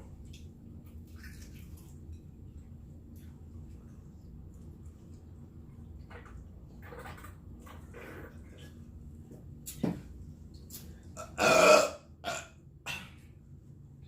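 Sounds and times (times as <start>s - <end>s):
person burping: 11.2s - 13.1s.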